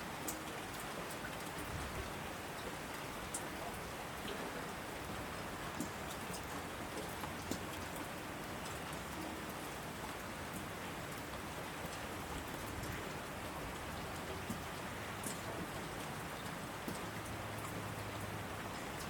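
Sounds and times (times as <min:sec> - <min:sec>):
heavy rain on asphalt: 0:00.0 - 0:19.0
raindrops ticking: 0:05.6 - 0:19.0.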